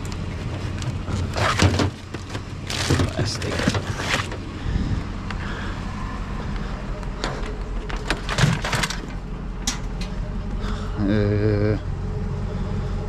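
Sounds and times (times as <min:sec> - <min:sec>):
plastic and metal scrap cracking: 0:00.0 - 0:04.5, 0:07.2 - 0:10.0
steady low hum: 0:00.0 - 0:13.0.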